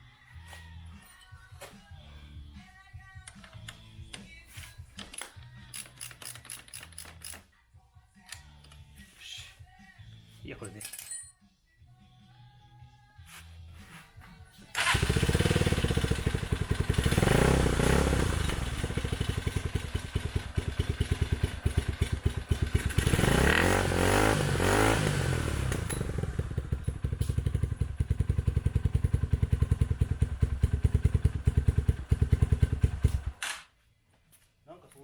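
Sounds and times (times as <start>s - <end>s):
motorcycle engine revving and idling: 14.7s - 33.4s
motorcycle engine starting: 14.7s - 33.5s.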